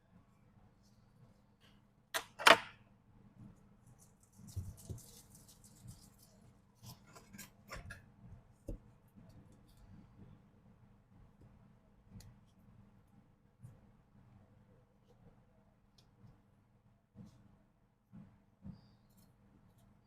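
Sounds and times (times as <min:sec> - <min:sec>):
scratchy rustle: 0:03.9 - 0:07.8.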